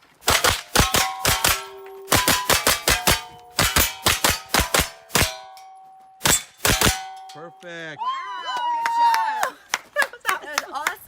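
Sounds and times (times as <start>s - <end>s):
rapid gunfire: 0.2s - 5.5s, 6.2s - 7.1s
steel plate clanging: 0.2s - 8.0s.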